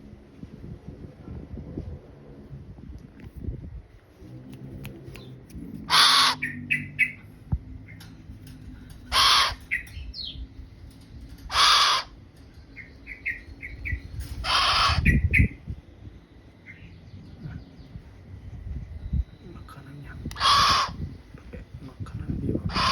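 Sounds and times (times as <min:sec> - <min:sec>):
bird squawking: 0:05.8 - 0:07.2, 0:09.1 - 0:10.4, 0:11.5 - 0:12.2, 0:12.8 - 0:15.6, 0:20.3 - 0:21.1, 0:22.6 - 0:22.9.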